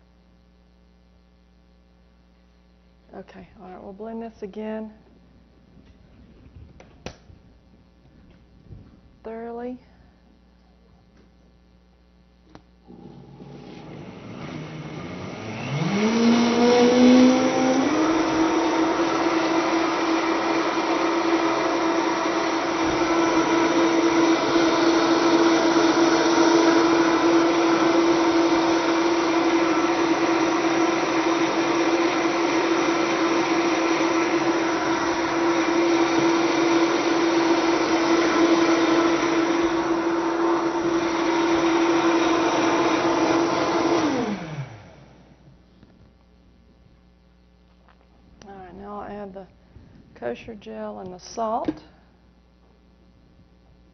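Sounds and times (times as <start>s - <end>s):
blender motor blending: 12.8s - 45.4s.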